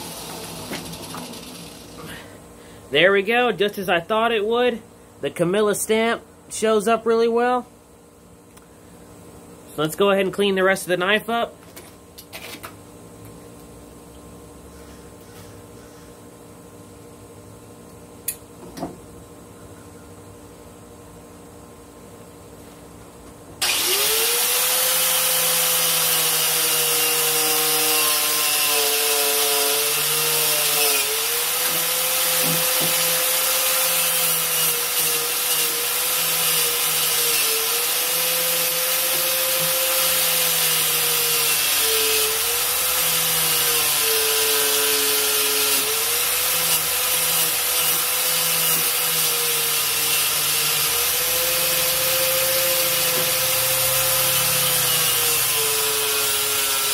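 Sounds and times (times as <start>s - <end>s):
electric power tool running: 0.0s - 2.2s, 23.6s - 56.9s.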